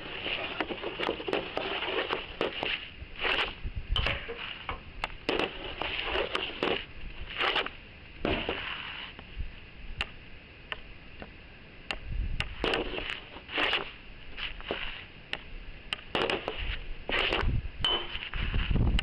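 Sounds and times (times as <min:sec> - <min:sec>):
footsteps crunching in snow: 0:00.0 - 0:09.2, 0:12.6 - 0:15.2, 0:16.2 - 0:19.0.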